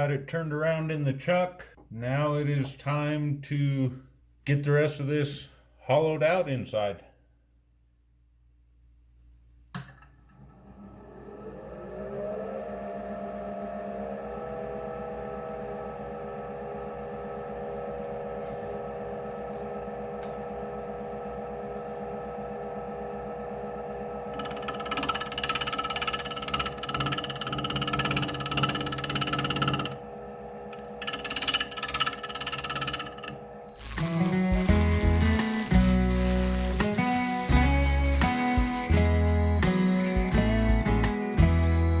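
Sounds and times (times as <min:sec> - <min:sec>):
wood lathe motor whine: 0:10.2 - 0:39.2
turning tool cutting wood bowl: 0:16.3 - 0:39.2.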